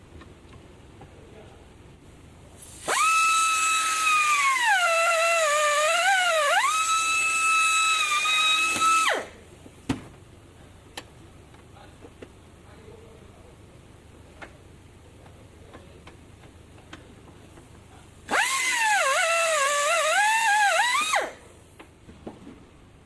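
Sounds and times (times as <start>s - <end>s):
power tool motor whining: 2.7s - 9.3s, 18.3s - 21.4s.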